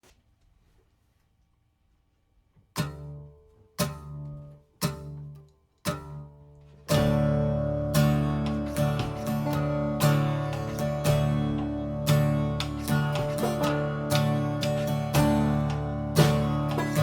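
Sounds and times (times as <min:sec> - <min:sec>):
background music: 0:06.9 - 0:17.0
ringing chords: 0:06.9 - 0:17.0.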